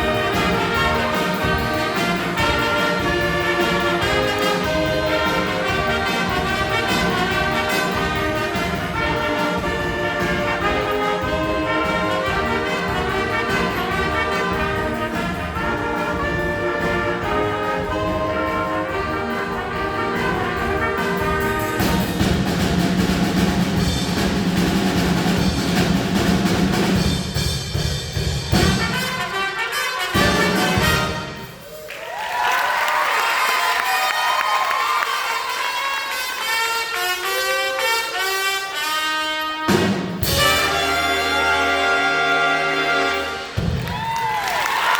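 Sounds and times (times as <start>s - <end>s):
brass band music: 0.0s - 44.9s.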